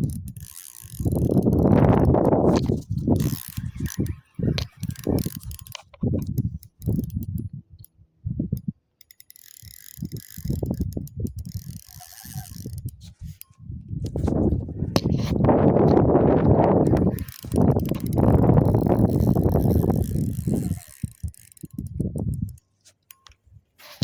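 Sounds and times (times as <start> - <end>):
fishing reel clicking: 0.0 - 7.9, 9.0 - 13.6, 14.2 - 24.0
microphone bumps and rubbing: 1.7 - 3.3.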